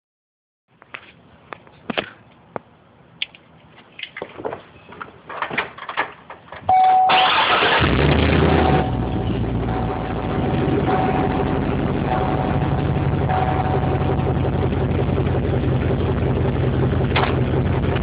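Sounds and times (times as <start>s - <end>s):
car engine starting and idling: 5.7s - 18.0s
steady high tone: 8.3s - 17.0s.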